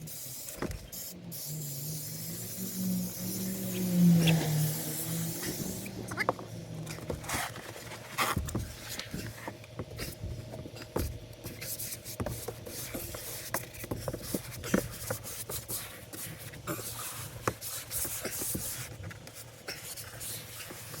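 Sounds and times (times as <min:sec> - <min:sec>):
scraping and rubbing: 0:03.6 - 0:21.0.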